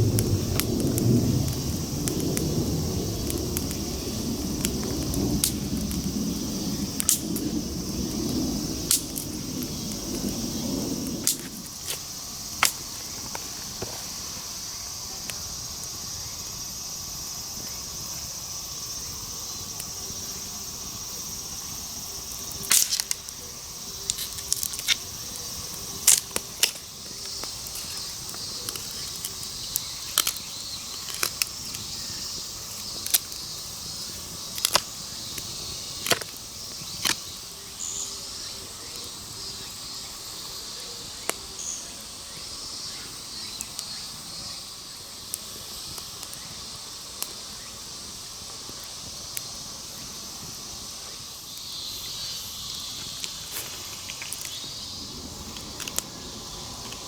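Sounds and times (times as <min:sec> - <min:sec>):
insects droning: 0:00.0 - 0:57.0
sharp clicks and snaps: 0:04.6 - 0:06.1, 0:06.9 - 0:07.5, 0:08.9 - 0:10.4, 0:11.0 - 0:12.0, 0:22.3 - 0:23.4, 0:24.0 - 0:25.0, 0:26.0 - 0:31.9, 0:34.5 - 0:37.3.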